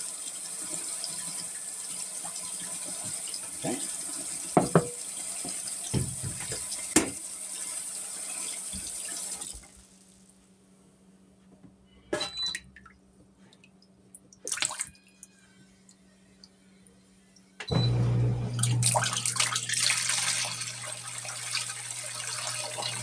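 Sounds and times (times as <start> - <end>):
water running into tub: 0.0 - 9.8, 17.7 - 23.0.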